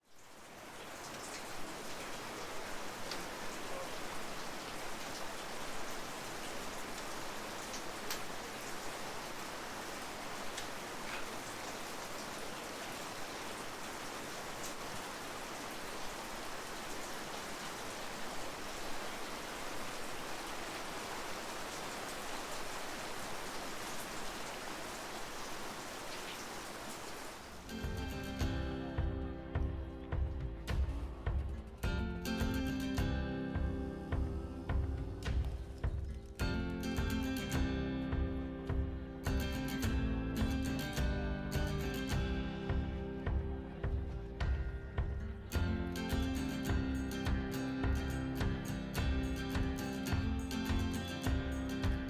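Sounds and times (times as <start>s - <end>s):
rain hissing: 0.0s - 28.2s
raindrops ticking: 0.0s - 28.2s.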